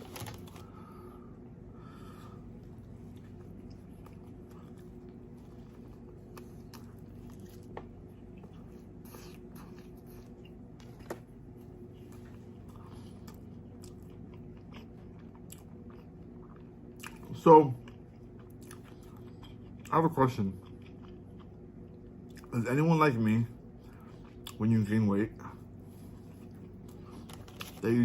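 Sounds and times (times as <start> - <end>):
steady low hum: 0.0 - 28.0
chewing food: 2.6 - 22.6, 23.6 - 24.8, 25.4 - 28.0.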